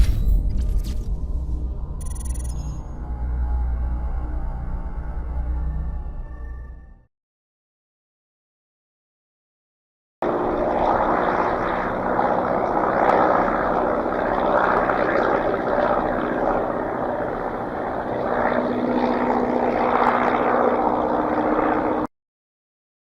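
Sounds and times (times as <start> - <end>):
engine drone: 0.0 - 7.1, 10.2 - 22.1
low hum: 0.0 - 7.1.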